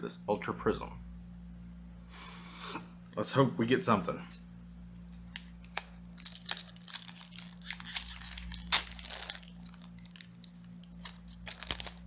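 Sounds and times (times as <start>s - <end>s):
foil wrapper crinkling and tearing: 5.2s - 12.0s.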